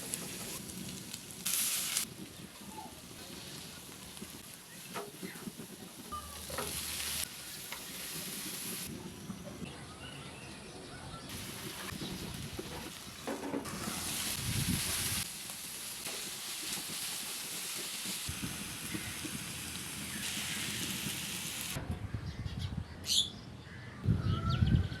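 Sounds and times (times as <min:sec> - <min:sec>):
food sizzling in a pan: 0:00.0 - 0:08.9, 0:11.3 - 0:21.8.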